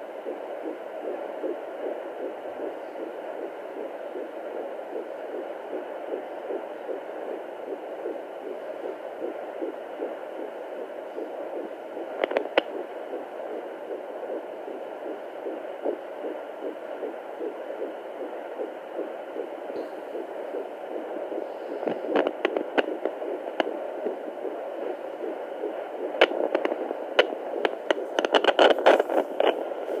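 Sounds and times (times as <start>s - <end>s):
fast heartbeat pulses: 0.0s - 30.0s
steady hiss: 0.0s - 30.0s
crackling clicks: 12.2s - 12.8s, 26.1s - 29.6s.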